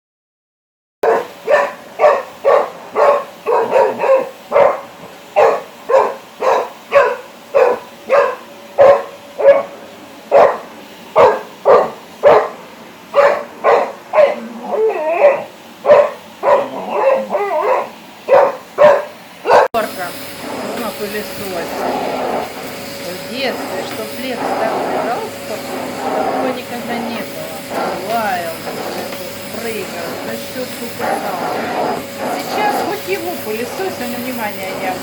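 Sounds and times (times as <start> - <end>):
puppy barking: 1.0 - 19.8
vacuum cleaner running: 1.1 - 35.0
puppy whining and yelping: 14.2 - 15.5, 16.4 - 17.9.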